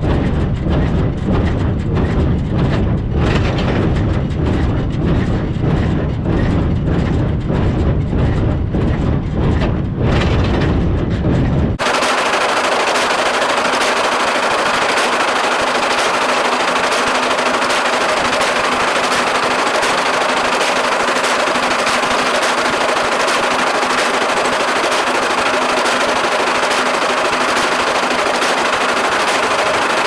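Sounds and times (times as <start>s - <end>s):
low machinery rumble: 0.0s - 11.9s
baler knocking: 0.0s - 30.0s.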